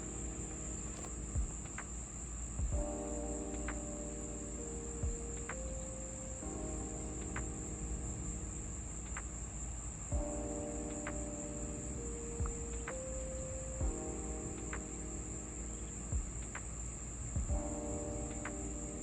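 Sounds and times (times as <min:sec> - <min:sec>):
crickets chirping: 0:00.0 - 0:19.0
lower steady tones: 0:00.0 - 0:19.0.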